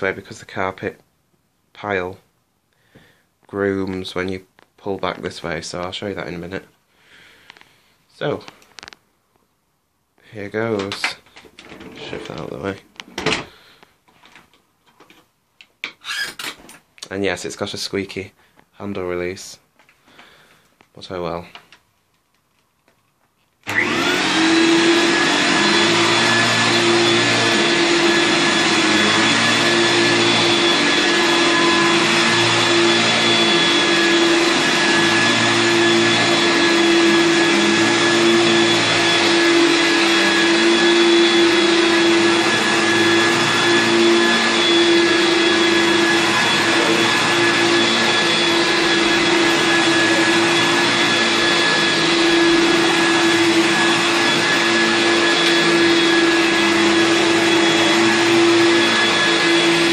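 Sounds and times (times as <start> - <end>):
upright vacuum cleaner running: 23.7 - 59.9.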